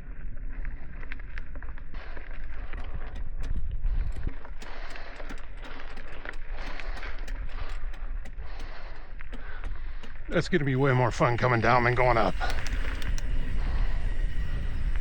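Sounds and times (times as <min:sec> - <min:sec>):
wind rumble on microphone: 0:00.0 - 0:08.8, 0:12.3 - 0:15.0
tyres crunching over gravel: 0:00.7 - 0:13.2
bike clicks and knocks: 0:01.3 - 0:10.5, 0:12.4 - 0:13.4.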